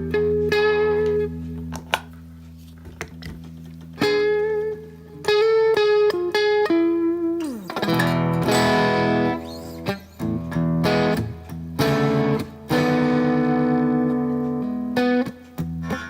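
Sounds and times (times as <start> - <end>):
distorted electric guitar: 4.0 - 16.0.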